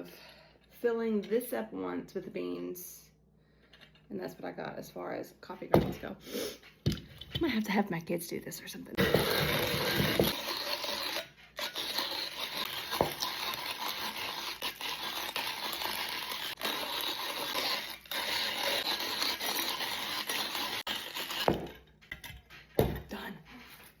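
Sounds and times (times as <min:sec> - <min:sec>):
coffee grinder crunching beans: 0:09.0 - 0:21.8.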